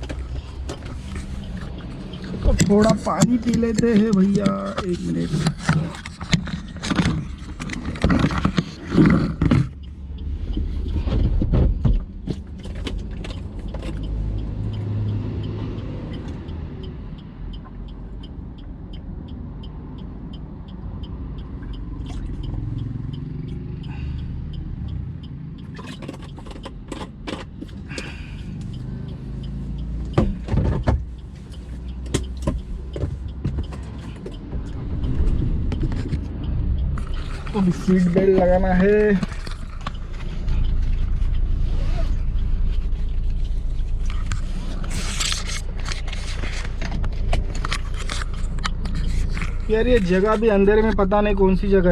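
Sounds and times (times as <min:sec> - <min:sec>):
clicks and knocks inside car: 0:00.0 - 0:14.1, 0:25.6 - 0:28.8, 0:29.9 - 0:51.7
car engine low hum: 0:00.0 - 0:51.9.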